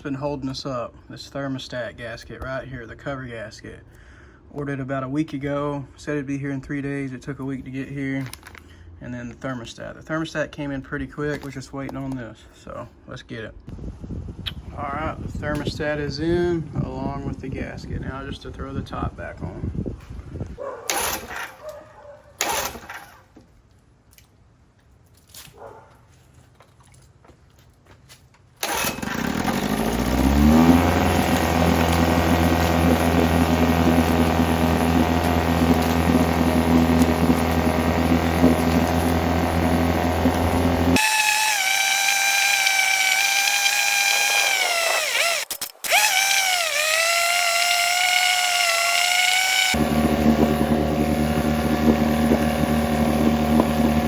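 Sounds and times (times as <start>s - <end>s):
outboard motor running: 28.6s - 54.0s.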